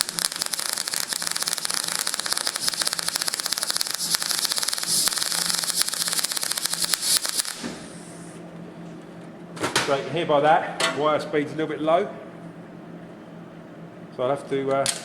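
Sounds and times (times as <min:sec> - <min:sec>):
welder arc crackling and popping: 0:00.0 - 0:08.4.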